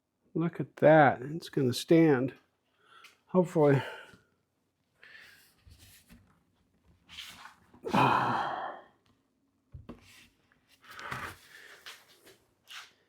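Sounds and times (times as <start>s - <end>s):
person sighing: 7.8s - 9.0s.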